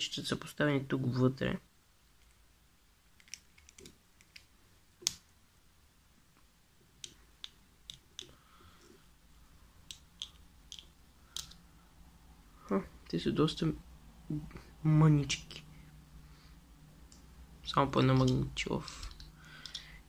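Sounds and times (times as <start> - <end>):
small plastic clicks: 19.0 - 19.9.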